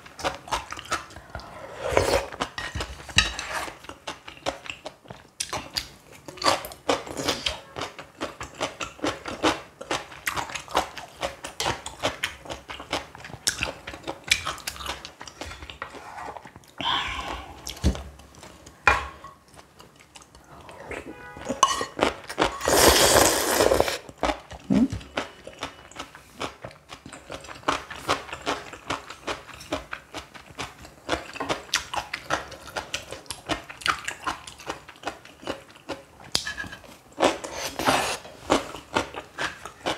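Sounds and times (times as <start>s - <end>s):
noodle slurp: 22.6s - 24.0s, 37.3s - 38.2s.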